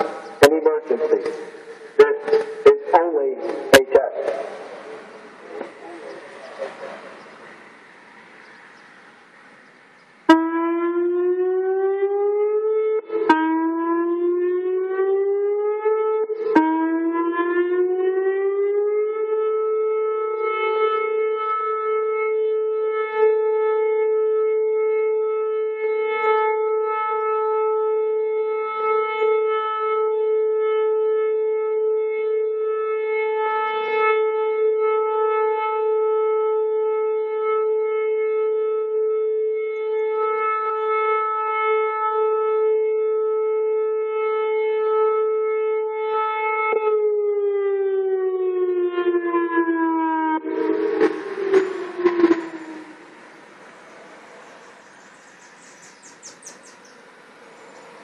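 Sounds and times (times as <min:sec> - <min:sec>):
tornado warning siren: 0:00.0 - 0:58.0
siren click: 0:01.2 - 0:02.7, 0:09.7 - 0:18.3, 0:33.3 - 0:44.2, 0:44.8 - 0:53.6.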